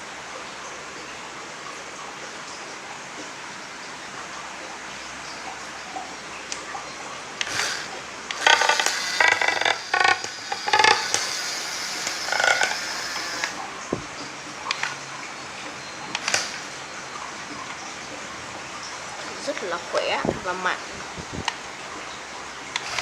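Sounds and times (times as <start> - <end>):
steady background noise: 0.0 - 23.0
clicks: 7.4 - 16.8
electric motors whining: 7.4 - 17.9, 22.7 - 23.0.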